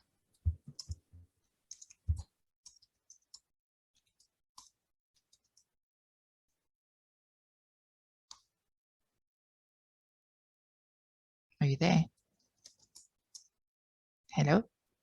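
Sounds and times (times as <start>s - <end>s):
keyboard keys clicking: 0.4s - 1.1s, 1.7s - 5.6s.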